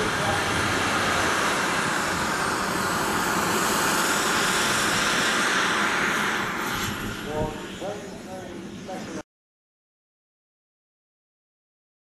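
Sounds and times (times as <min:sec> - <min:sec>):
loud steady jet noise: 0:00.0 - 0:09.2.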